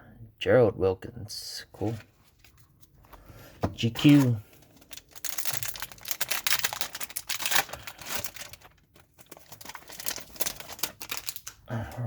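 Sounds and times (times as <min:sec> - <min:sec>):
wrapper crinkling and tearing: 0:03.8 - 0:11.7.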